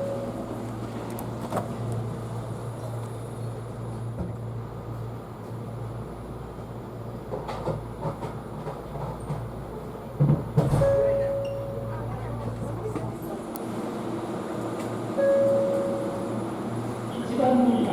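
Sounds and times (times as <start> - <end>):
electric train humming: 0.0 - 7.3, 10.8 - 17.9.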